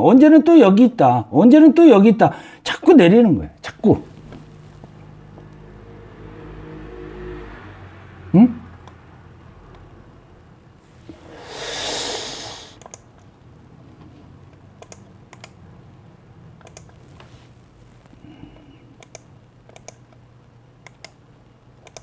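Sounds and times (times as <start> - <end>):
loud rush of noise: 10.9 - 12.8
computer keys clicking: 12.8 - 13.3, 14.5 - 15.6, 16.6 - 17.0, 19.0 - 20.2, 20.8 - 21.2, 21.8 - 22.0.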